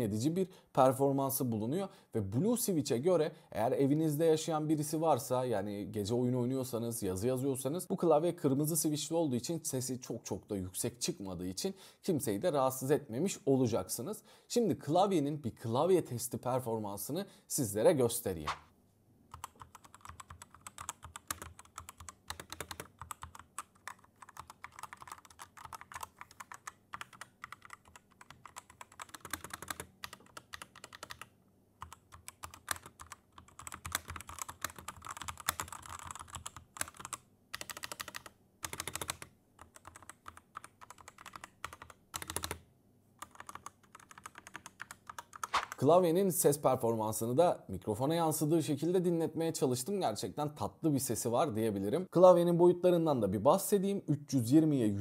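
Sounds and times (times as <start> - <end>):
mechanical keyboard typing: 19.3 - 42.6, 43.2 - 45.8
space bar strokes: 45.5 - 45.8.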